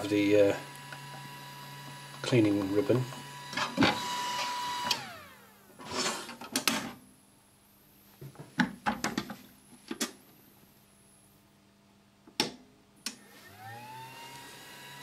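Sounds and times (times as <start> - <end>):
printer motor whining: 0.6 - 5.5, 13.5 - 15.0
sharp clicks and knocks: 12.3 - 13.2.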